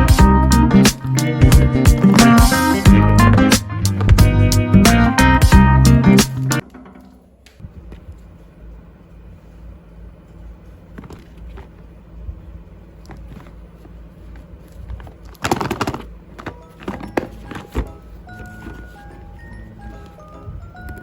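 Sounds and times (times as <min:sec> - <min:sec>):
background music with held notes: 0:00.0 - 0:06.8, 0:16.6 - 0:21.0.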